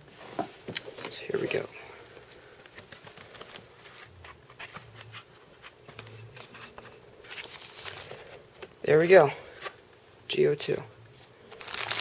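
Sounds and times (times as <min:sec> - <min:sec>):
packaging rustling and crackling: 0:00.8 - 0:05.4, 0:11.5 - 0:12.0.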